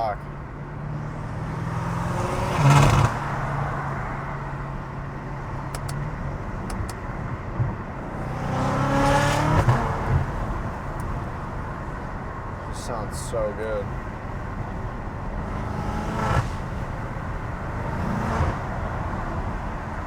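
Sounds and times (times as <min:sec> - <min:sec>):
car engine accelerating hard: 0:00.8 - 0:05.1, 0:07.9 - 0:20.0.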